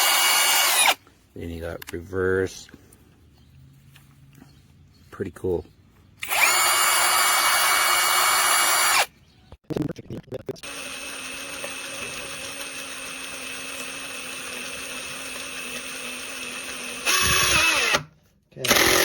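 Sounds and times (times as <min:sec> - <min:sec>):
impact driver whining: 0:00.0 - 0:01.0, 0:06.2 - 0:09.1, 0:10.6 - 0:19.0.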